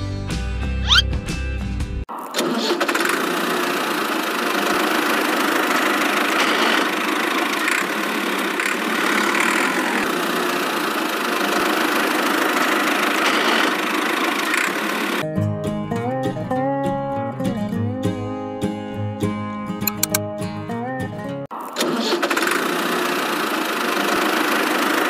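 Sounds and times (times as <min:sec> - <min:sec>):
small engine running roughly: 0:02.4 - 0:15.2, 0:21.8 - 0:25.0.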